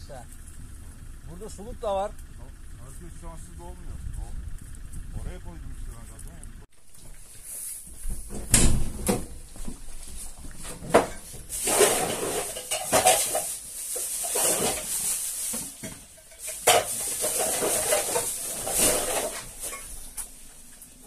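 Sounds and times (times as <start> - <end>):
bowls clattering and scraping: 10.4 - 20.3.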